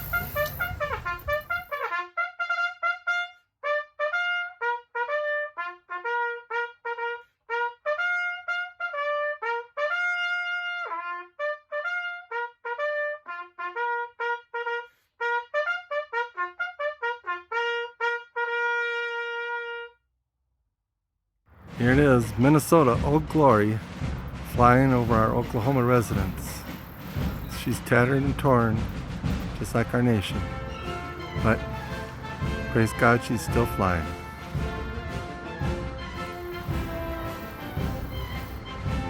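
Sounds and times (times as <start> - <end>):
solo trumpet bugle call: 0.0 - 20.0, 29.8 - 39.0.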